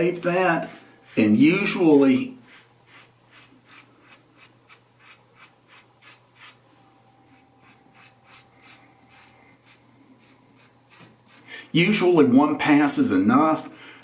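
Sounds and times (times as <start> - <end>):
razor scraping whiskers: 2.5 - 6.6, 7.2 - 11.5.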